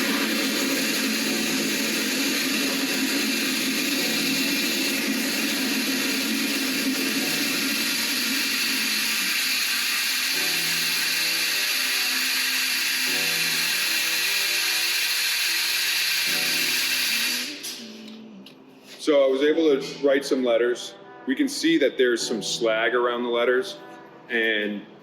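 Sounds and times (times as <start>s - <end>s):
plasma cutter arc hissing: 0.0s - 18.1s.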